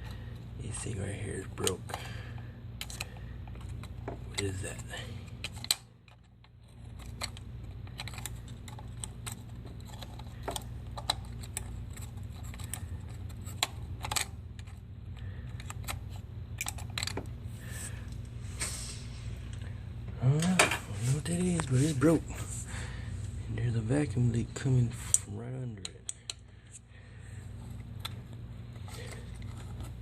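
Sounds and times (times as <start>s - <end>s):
low steady hum: 0.0s - 30.0s
clicks and knocks of handled parts: 1.5s - 17.4s, 25.0s - 26.9s, 27.6s - 30.0s.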